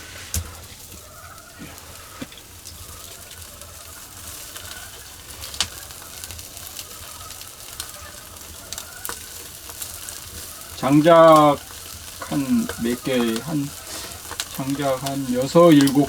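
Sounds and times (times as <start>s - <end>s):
fire crackles and pops: 0.0s - 16.0s
fish sizzling on a grill: 0.0s - 16.0s.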